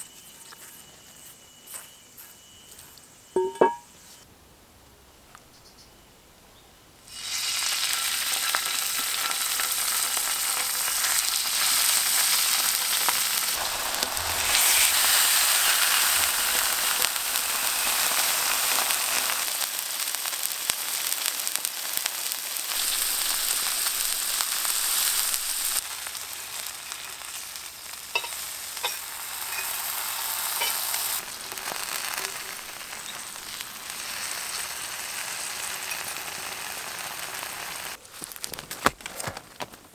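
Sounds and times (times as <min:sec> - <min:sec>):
food sizzling in a pan: 0:07.1 - 0:38.0
pops and crackles: 0:37.9 - 0:39.9.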